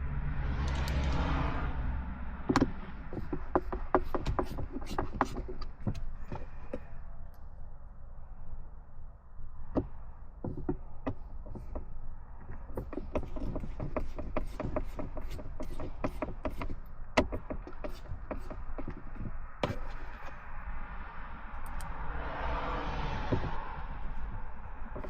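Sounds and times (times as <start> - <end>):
clicks and knocks on plastic: 9.7 - 20.4.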